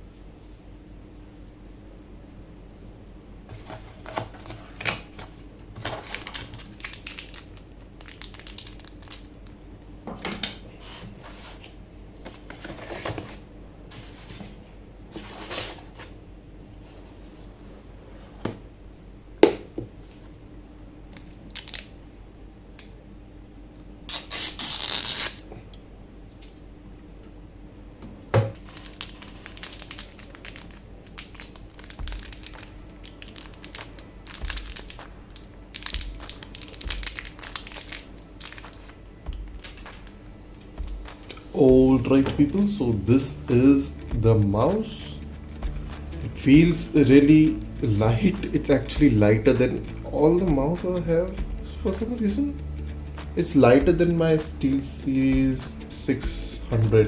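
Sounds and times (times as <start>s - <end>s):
paper and plastic rustling: 2.9s - 9.6s, 10.4s - 17.6s, 28.5s - 44.0s.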